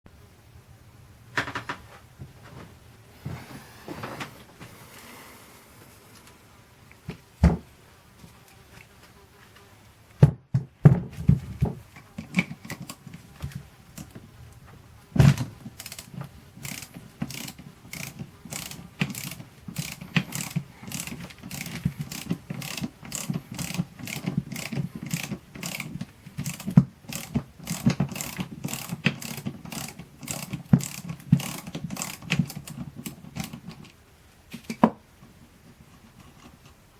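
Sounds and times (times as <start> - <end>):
ratchet wrench clicking: 15.8 - 33.8.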